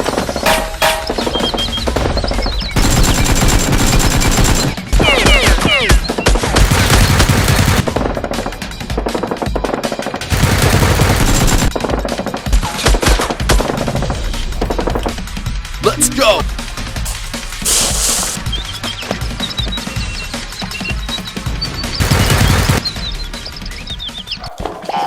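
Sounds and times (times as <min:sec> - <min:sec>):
machine-gun fire: 0:02.1 - 0:05.4, 0:06.3 - 0:08.4, 0:09.8 - 0:14.4, 0:22.0 - 0:22.9.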